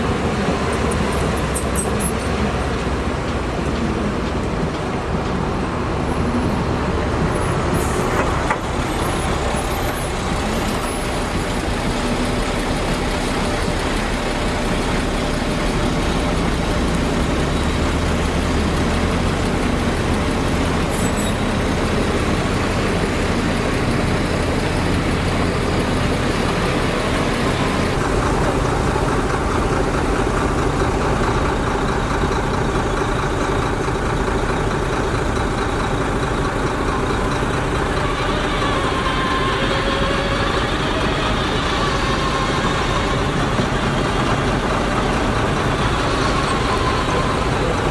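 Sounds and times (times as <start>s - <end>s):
heavy diesel machinery running: 0.0s - 47.9s.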